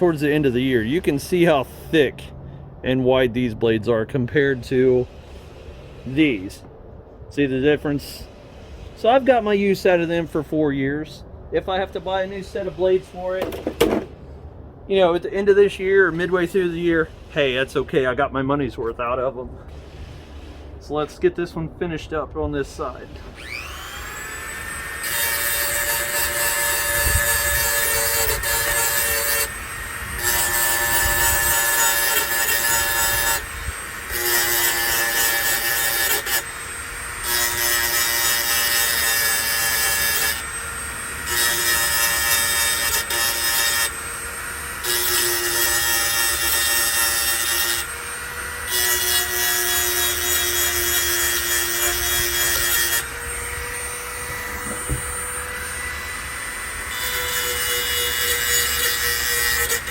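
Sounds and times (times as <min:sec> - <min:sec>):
grinder motor running: 0:23.3 - 0:33.0.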